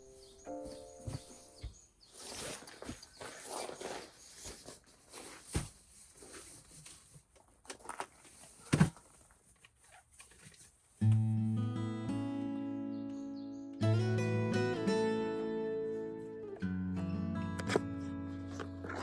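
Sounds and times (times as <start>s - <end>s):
rustling of gear: 2.0s - 10.9s.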